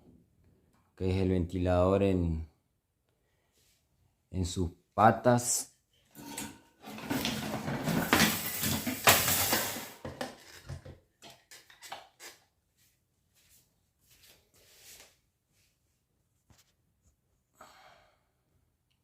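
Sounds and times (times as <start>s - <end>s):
fan parts rattling and knocking: 6.2s - 10.9s.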